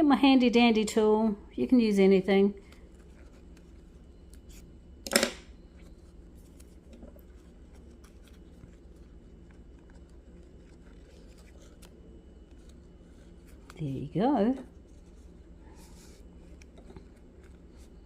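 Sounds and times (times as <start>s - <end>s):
dried leaf strips crackling: 5.7s - 18.0s.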